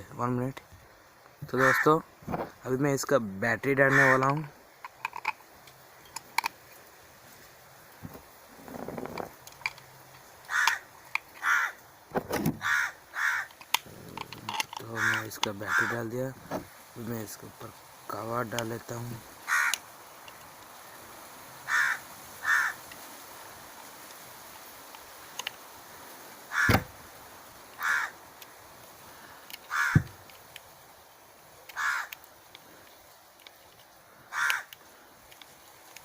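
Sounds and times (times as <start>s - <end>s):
crow cawing: 1.5s - 2.0s, 3.8s - 4.5s, 10.4s - 11.8s, 12.6s - 14.0s, 14.9s - 16.1s, 19.4s - 19.9s, 21.6s - 22.9s, 26.5s - 26.9s, 27.8s - 28.2s, 29.1s - 30.2s, 31.7s - 32.2s, 34.1s - 35.0s
sharp handling knocks: 12.1s - 12.7s, 26.6s - 27.0s, 29.8s - 30.2s.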